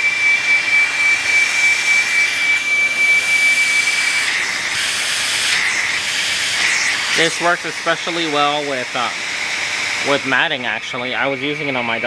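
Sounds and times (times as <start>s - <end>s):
vacuum air rush: 0.0s - 10.7s
vacuum high whine: 0.0s - 12.0s.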